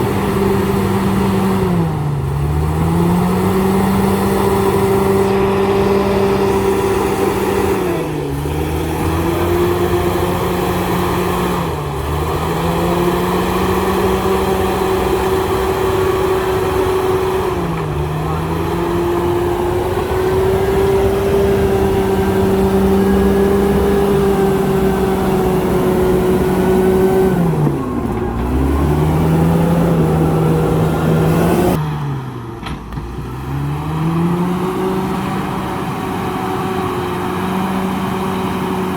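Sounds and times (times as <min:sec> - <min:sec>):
bulldozer diesel engine revving: 0:00.0 - 0:38.9.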